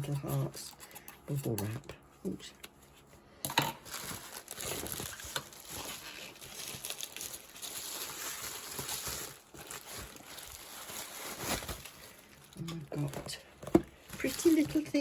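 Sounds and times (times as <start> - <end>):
bubble wrap crinkling: 3.7 - 15.0.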